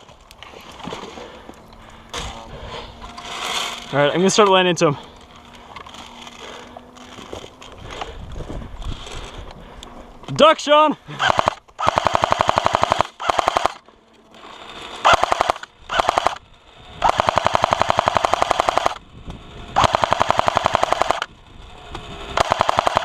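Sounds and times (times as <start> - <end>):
airsoft gun firing bursts: 11.2 - 13.8, 14.7 - 16.4, 17.0 - 19.0, 19.8 - 21.3, 22.2 - 23.0.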